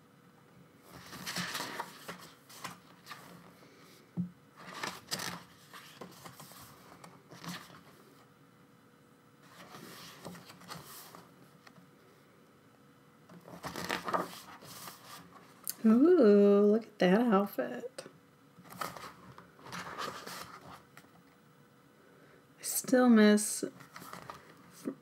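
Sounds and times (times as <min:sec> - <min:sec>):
photobook pages turning: 0:00.9 - 0:03.5, 0:04.6 - 0:08.0, 0:09.4 - 0:11.3, 0:13.4 - 0:15.5, 0:18.6 - 0:21.1, 0:23.8 - 0:25.0.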